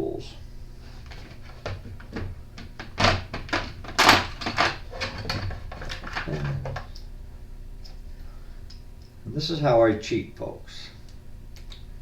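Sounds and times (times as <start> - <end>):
plastic case clicks and knocks: 1.1 - 6.9.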